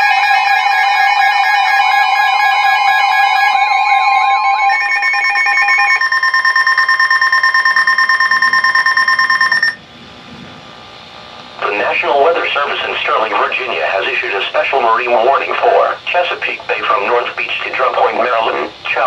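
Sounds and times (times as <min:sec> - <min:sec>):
steady high attention tone: 0:00.0 - 0:09.9
warbling electronic alert tone: 0:01.2 - 0:09.8.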